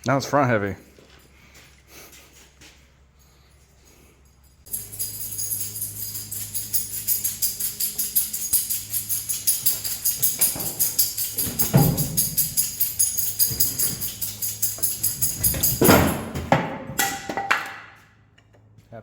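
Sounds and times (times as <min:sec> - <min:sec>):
music with percussive beat: 0:04.7 - 0:16.5.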